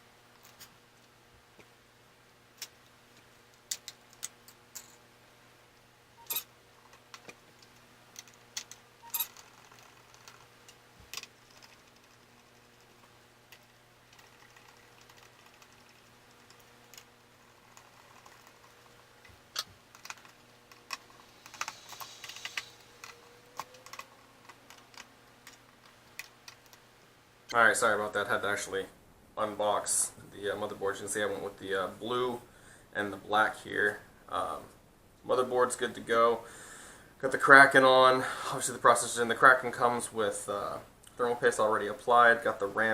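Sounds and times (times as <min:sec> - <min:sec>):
faint electrical hum: 0:00.0 - 0:42.9.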